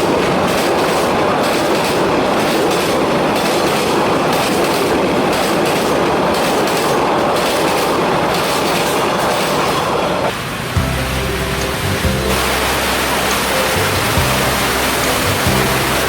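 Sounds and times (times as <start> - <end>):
train wheels clattering over rail joints: 0.0 - 10.0.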